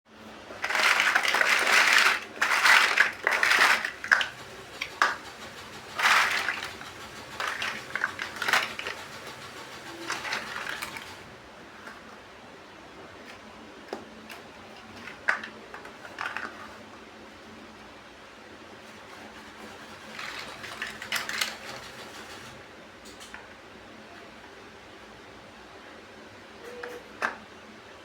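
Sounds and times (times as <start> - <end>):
plastic bricks clattering: 0.5 - 11.3, 14.8 - 16.8, 19.7 - 22.2.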